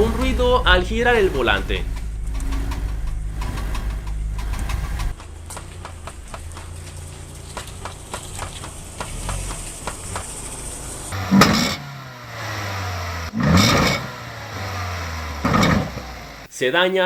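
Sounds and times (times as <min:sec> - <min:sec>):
car engine running: 0:00.0 - 0:16.5
sharp clicking: 0:01.8 - 0:10.5.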